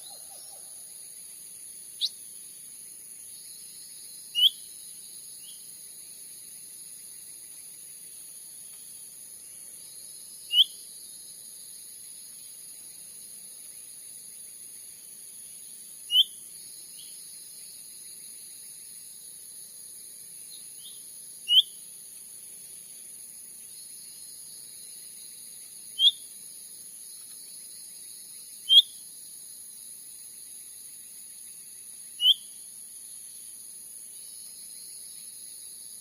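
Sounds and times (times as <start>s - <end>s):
bird whistled calls: 4.4s - 4.6s, 10.5s - 10.8s, 16.1s - 16.4s, 21.5s - 21.7s, 32.2s - 32.5s.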